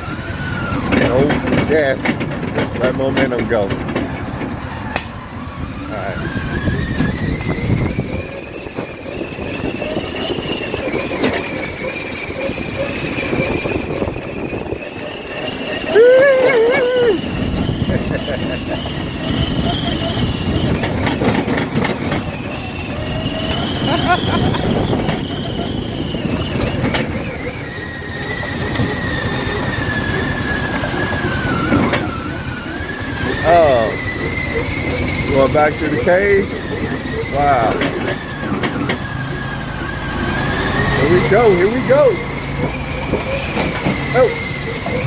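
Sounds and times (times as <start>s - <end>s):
tires rumbling on rough trail: 0.0s - 45.0s
atv high-pitched whine: 3.1s - 45.0s.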